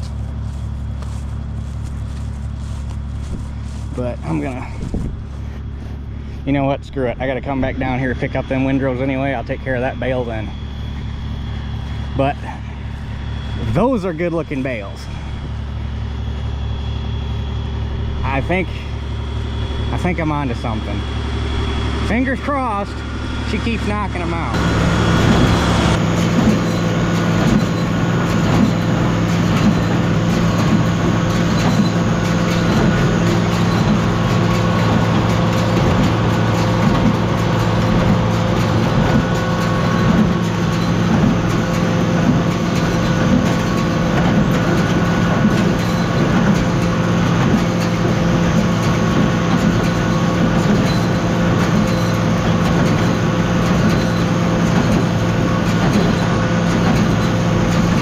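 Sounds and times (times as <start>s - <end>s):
tractor engine under load: 0.0s - 58.0s
baler mechanism clattering: 20.6s - 58.0s.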